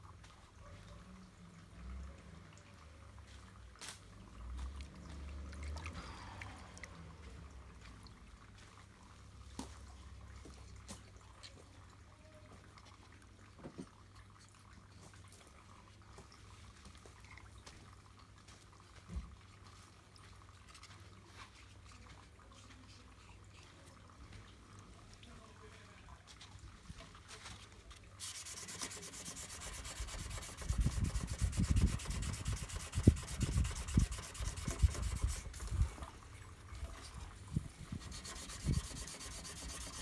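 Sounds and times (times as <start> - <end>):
sanding scratchy rubbing: 28.2 - 36.1, 36.8 - 40.0.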